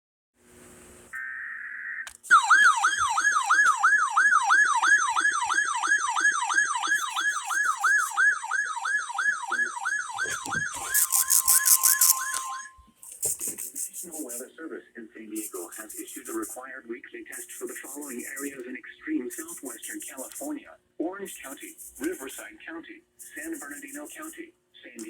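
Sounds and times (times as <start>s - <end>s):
falling siren-like alert tone: 1.2s - 13.0s
rapid high beeps: 6.8s - 8.2s, 10.2s - 12.8s
data-burst tone: 6.9s - 8.2s, 10.2s - 14.4s
steady tone: 10.3s - 14.3s.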